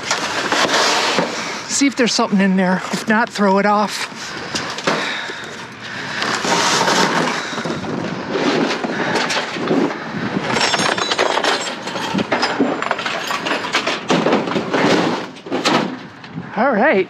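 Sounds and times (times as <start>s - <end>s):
items knocking and clinking: 4.5s - 16.2s.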